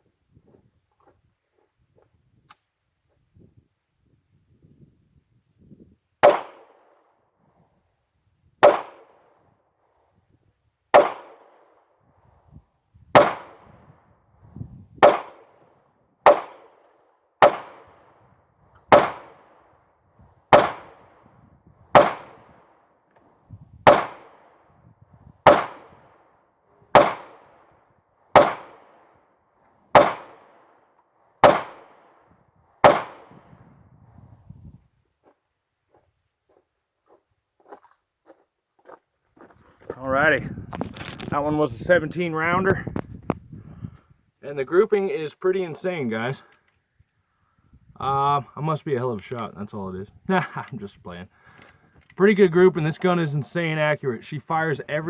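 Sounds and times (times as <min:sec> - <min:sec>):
pistol shots ringing: 0:08.6 - 0:09.3, 0:10.9 - 0:11.8, 0:13.2 - 0:13.7, 0:16.2 - 0:16.8, 0:17.4 - 0:18.1, 0:18.9 - 0:19.6, 0:20.5 - 0:21.1, 0:22.0 - 0:22.6, 0:23.9 - 0:24.6, 0:25.5 - 0:26.0, 0:26.9 - 0:27.6, 0:28.4 - 0:29.1, 0:29.9 - 0:30.7, 0:31.4 - 0:32.2, 0:32.8 - 0:33.4.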